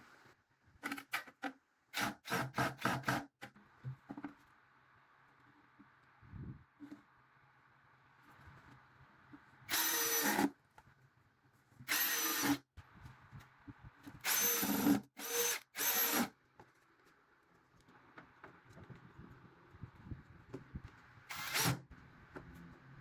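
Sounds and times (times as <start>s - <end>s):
power drill whining: 9.7s - 10.5s, 11.9s - 12.6s, 14.2s - 16.3s, 21.3s - 21.8s.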